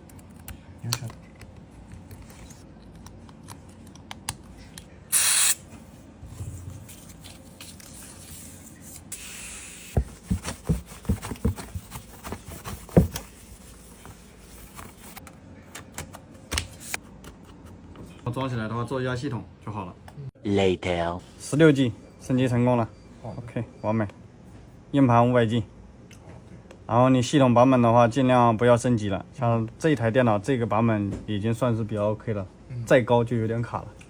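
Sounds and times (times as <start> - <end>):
short hiss: 5.1 - 5.6, 9.1 - 10.0.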